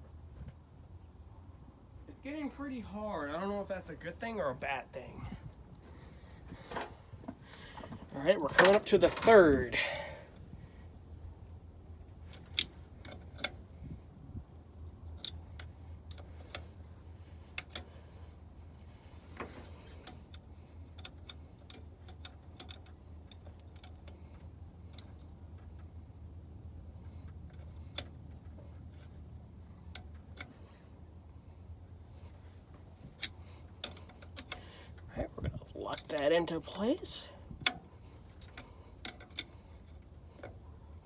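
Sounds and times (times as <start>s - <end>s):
faint low hum: 0.0s - 41.0s
tools and metal parts clicking: 8.4s - 10.0s, 19.4s - 25.9s, 33.1s - 35.1s, 35.9s - 40.6s.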